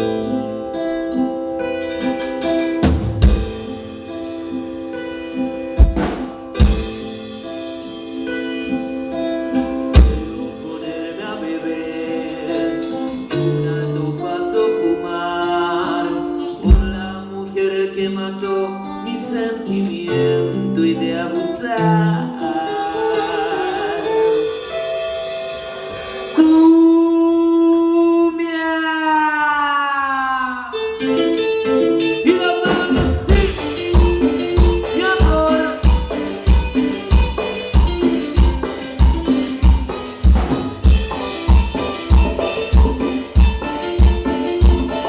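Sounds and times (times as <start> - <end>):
plucked guitar melody: 0.0 - 27.3, 30.6 - 45.0
bass line: 32.6 - 45.0.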